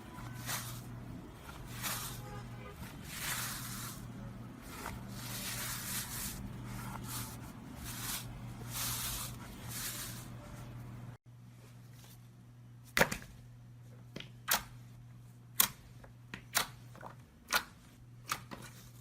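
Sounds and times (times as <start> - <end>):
steady low hum: 0.0 - 14.1.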